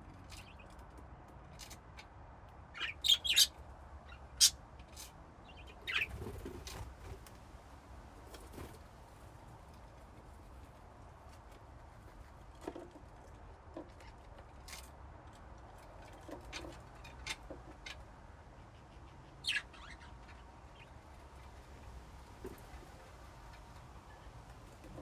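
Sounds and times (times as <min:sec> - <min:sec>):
budgies chirping: 0:02.8 - 0:04.6, 0:05.5 - 0:06.3, 0:19.0 - 0:20.9.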